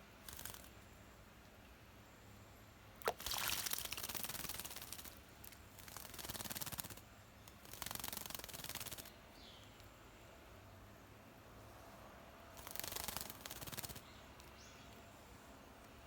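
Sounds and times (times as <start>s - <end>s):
bird wings splashing water: 3.0s - 7.0s.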